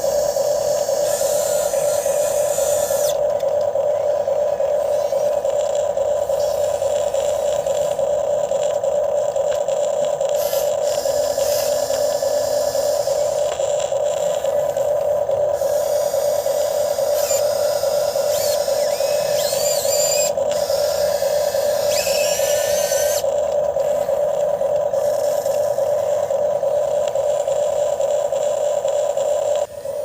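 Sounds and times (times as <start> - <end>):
small electric motor whining: 0.0 - 30.0
high wavering gliding whistles: 15.5 - 23.2.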